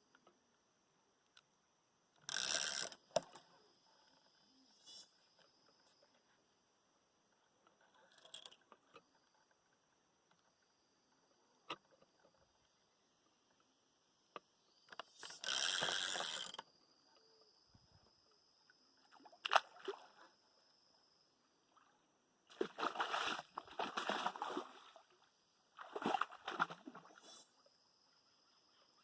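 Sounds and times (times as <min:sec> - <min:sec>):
water splashing and sloshing: 0:19.0 - 0:20.4, 0:21.7 - 0:27.4.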